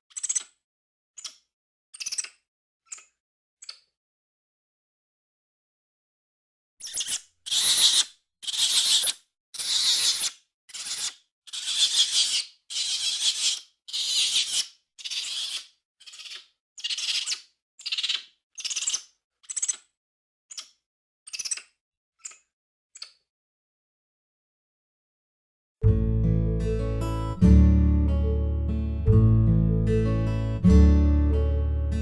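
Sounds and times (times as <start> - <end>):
monkey chattering: 6.8 - 19.8.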